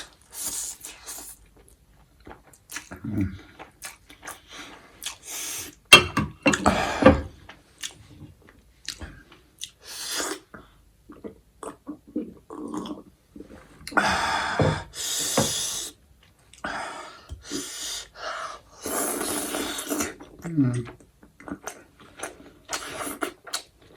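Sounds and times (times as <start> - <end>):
wet chewing and slurping: 0.0 - 5.8, 21.4 - 23.9
loud breaths or sniffs: 14.0 - 16.0, 16.8 - 20.1.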